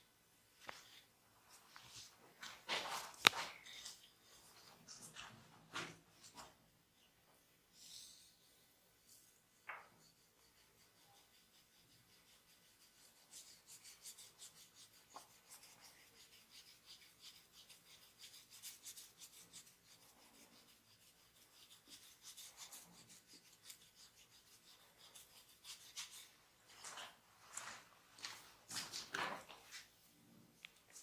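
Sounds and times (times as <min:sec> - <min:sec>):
hands rubbing during massage: 0:09.7 - 0:30.0.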